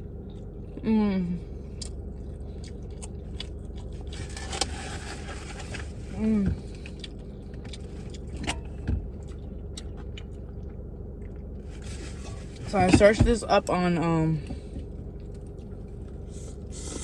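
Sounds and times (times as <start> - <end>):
steady low rumble: 0.0 - 17.0
person eating: 1.6 - 4.6.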